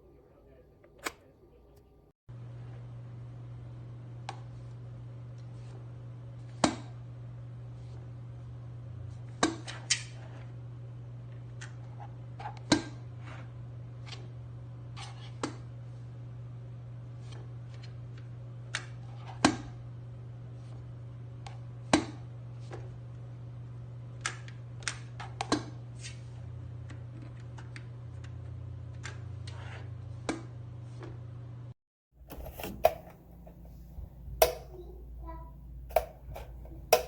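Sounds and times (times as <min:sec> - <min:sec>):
electric kettle heating: 0:32.2 - 0:37.0.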